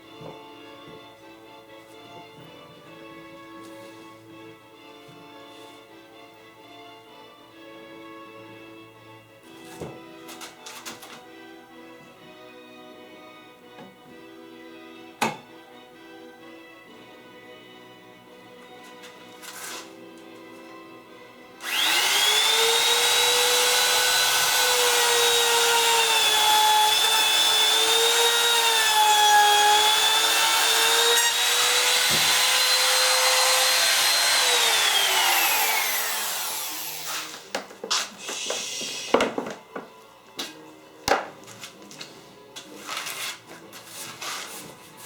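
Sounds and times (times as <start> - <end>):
electric power tool whining: 21.6 - 37.5.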